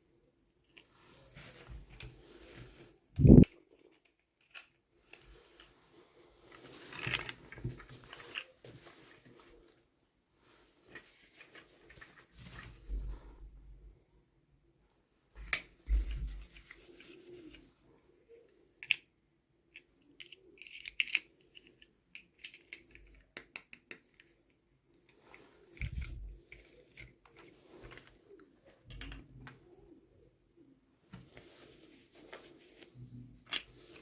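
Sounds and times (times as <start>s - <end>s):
plastic toys clicking: 18.8s - 19.1s, 19.7s - 25.2s.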